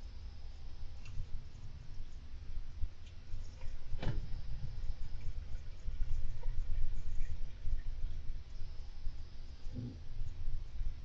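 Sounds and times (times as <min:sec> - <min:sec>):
hamster scratching and pattering: 0:03.0 - 0:08.8.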